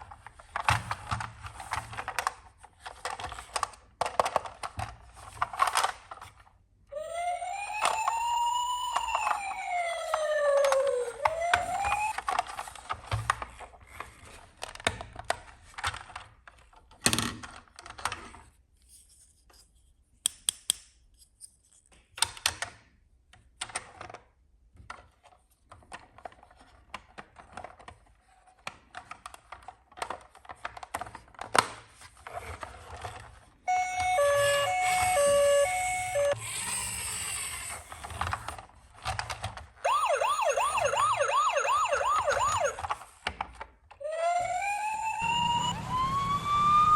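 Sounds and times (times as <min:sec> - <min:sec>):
fast yelp siren: 0:07.0 - 0:12.4, 0:33.7 - 0:36.4, 0:39.8 - 0:42.9, 0:44.0 - 0:46.9
two-tone hi-lo siren: 0:07.0 - 0:12.4, 0:33.7 - 0:36.4, 0:39.8 - 0:42.9, 0:44.0 - 0:46.9.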